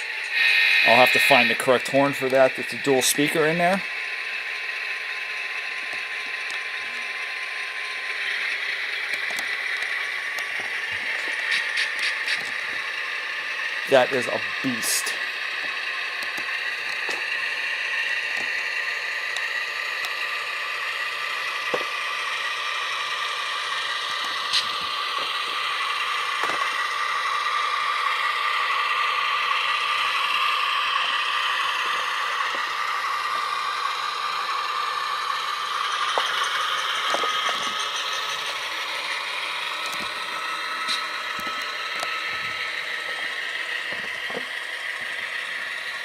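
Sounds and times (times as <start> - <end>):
model diesel engine idling: 0.0 - 46.0.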